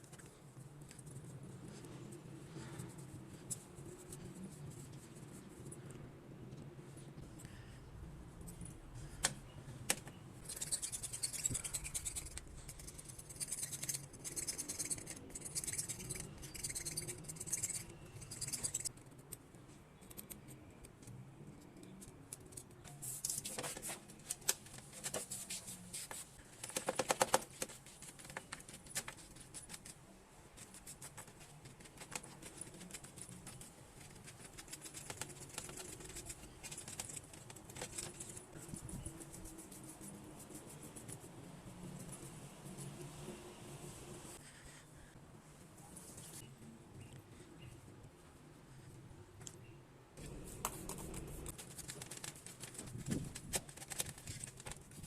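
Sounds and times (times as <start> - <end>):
scraping and rubbing on metal: 10.4 - 18.9.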